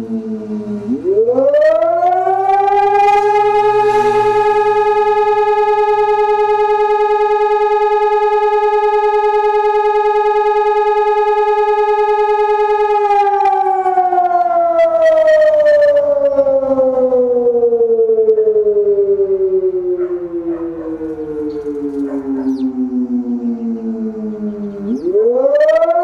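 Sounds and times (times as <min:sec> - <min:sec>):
electronic siren steady tone: 0:00.0 - 0:26.0.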